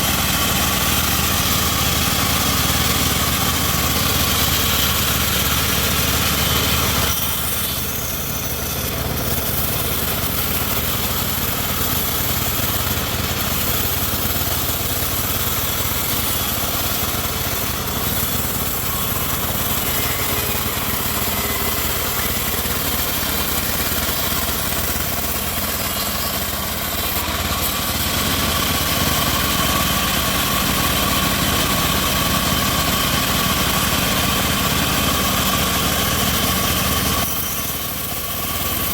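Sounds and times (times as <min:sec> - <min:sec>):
bandsaw sawmill drone: 0:00.0 - 0:38.9.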